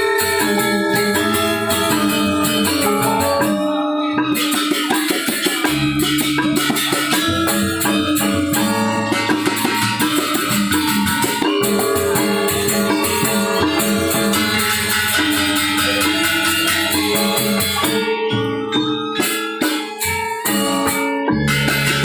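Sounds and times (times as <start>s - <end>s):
drums: 0.0s - 22.0s
metallophones ringing: 0.0s - 22.0s
rapid cymbal clashing: 4.4s - 18.4s.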